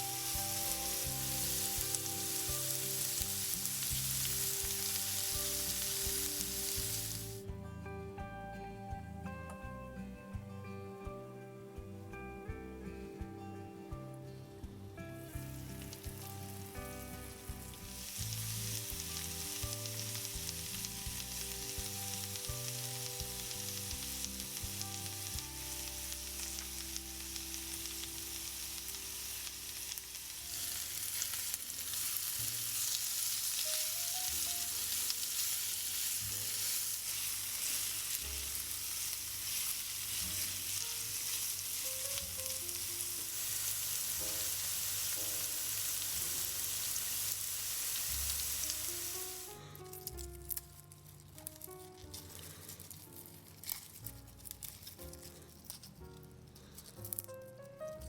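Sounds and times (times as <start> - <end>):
food sizzling in a pan: 0.0 - 7.5, 15.2 - 50.6
soft background music: 0.0 - 58.0.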